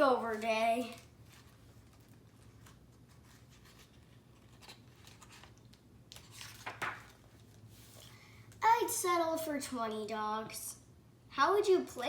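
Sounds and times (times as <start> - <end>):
paper rustling: 0.0 - 8.0.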